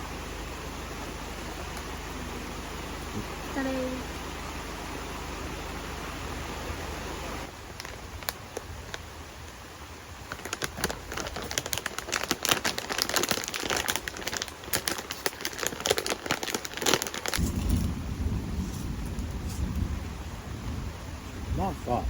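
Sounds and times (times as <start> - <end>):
crinkling and crackling clicks: 7.7 - 9.6, 10.2 - 17.9.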